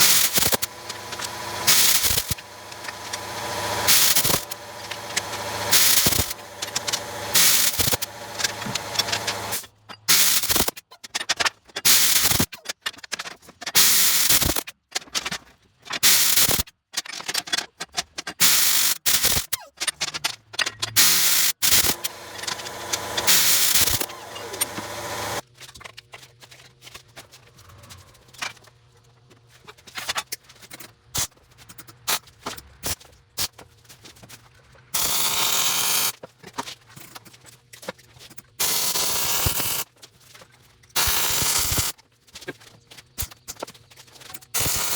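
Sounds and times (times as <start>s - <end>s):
metal-shop tool bursts: 0.0s - 10.7s, 11.9s - 12.5s, 18.4s - 19.5s, 21.0s - 25.4s, 35.0s - 36.1s, 38.6s - 39.8s, 41.0s - 41.9s, 44.6s - 44.9s.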